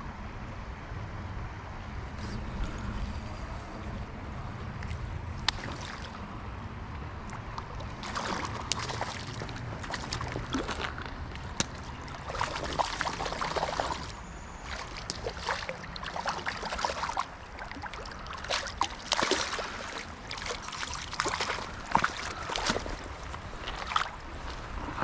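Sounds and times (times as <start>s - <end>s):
creek water trickling: 2.2s - 25.0s
short splashes: 5.4s - 6.2s, 7.3s - 25.0s.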